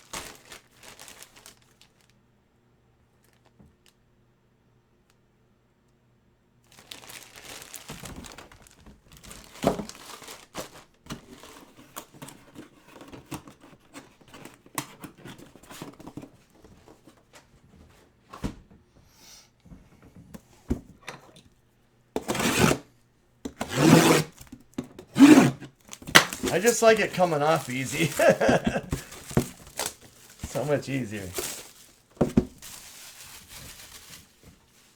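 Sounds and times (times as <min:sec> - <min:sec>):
plastic packaging crinkling and tearing: 0:00.0 - 0:02.2, 0:03.2 - 0:04.0, 0:06.7 - 0:12.1, 0:25.2 - 0:34.9.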